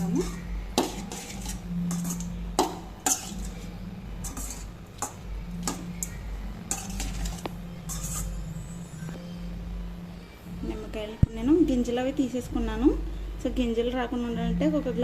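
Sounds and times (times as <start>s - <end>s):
spoon scraping a cooking pot: 0.0s - 8.8s
low hum: 0.0s - 15.0s.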